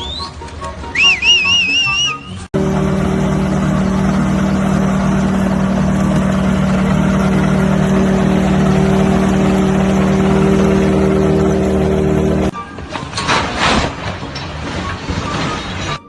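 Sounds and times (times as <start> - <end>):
engine running steadily: 2.5 - 12.6.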